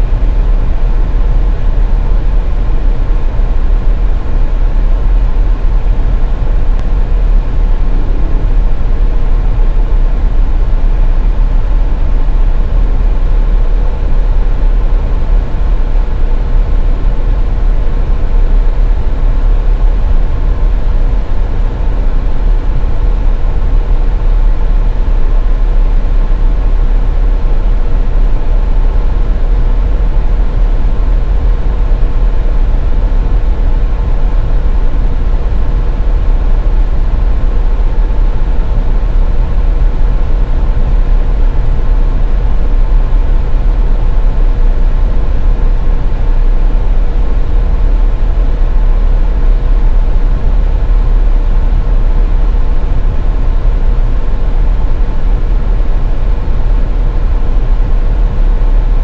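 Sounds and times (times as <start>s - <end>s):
faint steady hum: 0.0s - 59.0s
tyre and engine rumble: 0.0s - 59.0s.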